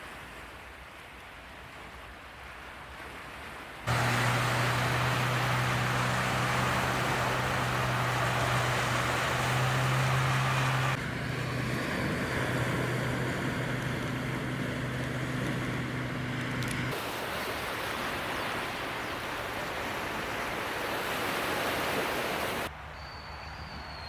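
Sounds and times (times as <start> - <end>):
car engine hum: 3.9 - 17.0
broad rushing noise: 3.9 - 22.7.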